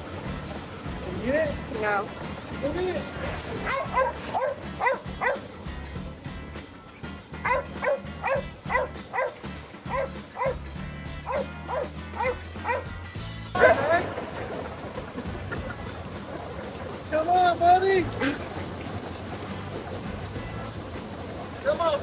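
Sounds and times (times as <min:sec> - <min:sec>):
background music: 0:00.0 - 0:22.0
dog barking: 0:03.5 - 0:05.5, 0:07.4 - 0:10.6, 0:11.2 - 0:13.0, 0:13.6 - 0:14.1.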